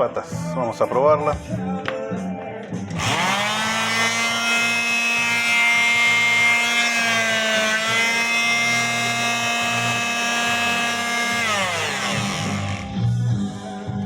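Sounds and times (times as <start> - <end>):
electric sander motor whine: 3.0 - 13.6.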